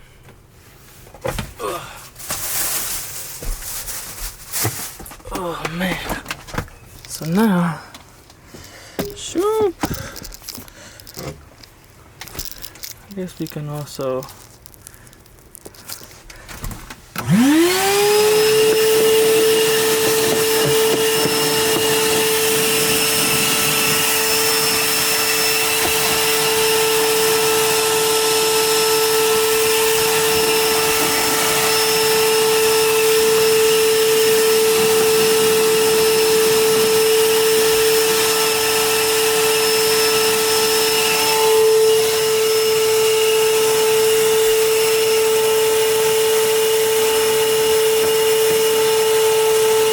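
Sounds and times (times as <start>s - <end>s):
vacuum cleaner running: 16.5s - 49.9s.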